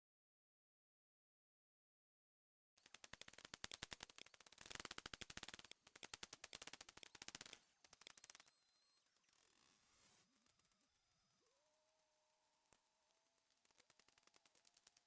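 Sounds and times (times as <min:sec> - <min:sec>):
dolphin echolocation clicks: 0:02.8 - 0:08.7
faint high whistle: 0:08.4 - 0:09.1.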